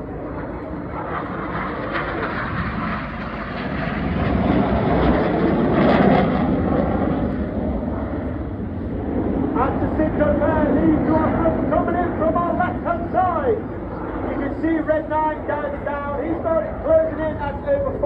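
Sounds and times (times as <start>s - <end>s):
jet aircraft roar: 0.0s - 18.0s.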